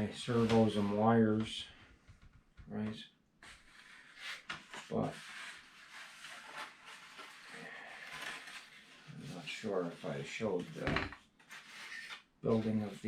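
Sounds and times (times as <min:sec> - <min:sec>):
foam parts rustling and rubbing: 0:03.4 - 0:12.9.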